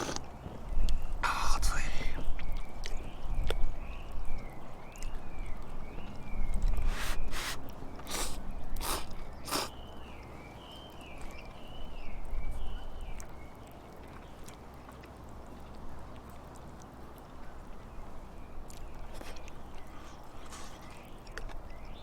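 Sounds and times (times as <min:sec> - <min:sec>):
faint outdoor background: 0:00.0 - 0:22.0
bird whistling call: 0:06.9 - 0:09.8.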